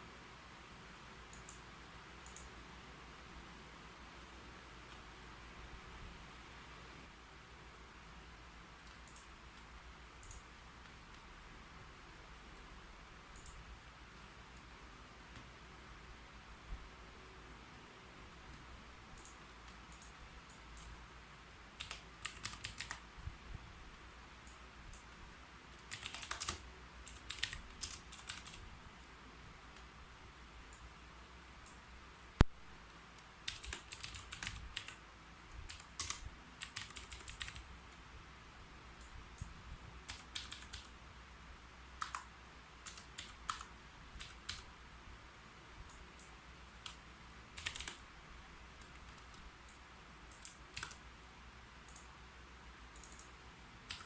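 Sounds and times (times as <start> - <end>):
keyboard typing: 1.3 - 2.5, 8.8 - 11.0, 21.8 - 23.1, 25.7 - 28.6, 33.2 - 35.0, 35.6 - 37.7, 39.0 - 41.0, 42.0 - 44.7, 45.9 - 48.0, 48.8 - 51.0, 52.9 - 54.0.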